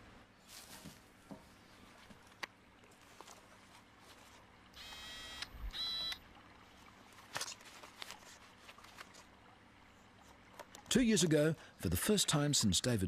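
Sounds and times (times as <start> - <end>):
short electronic beeps: 4.8 - 6.2.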